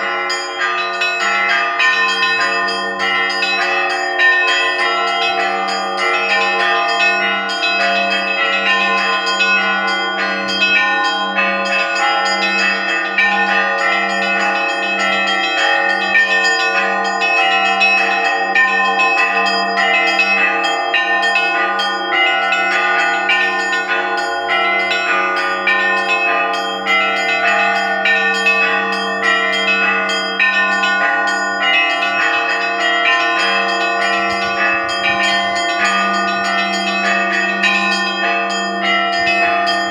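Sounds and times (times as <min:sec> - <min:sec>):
low church bell: 0:00.0 - 0:39.9
small high bells ringing: 0:00.0 - 0:39.9.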